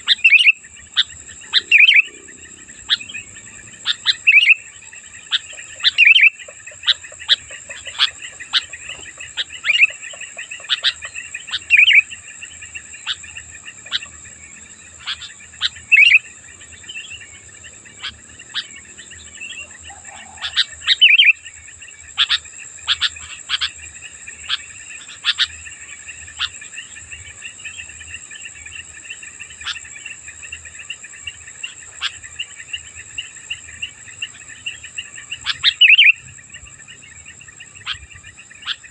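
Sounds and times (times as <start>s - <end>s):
bird sharp chirps: 0.0s - 14.2s, 14.9s - 21.4s, 31.6s - 38.9s
high insect buzz: 0.0s - 38.9s.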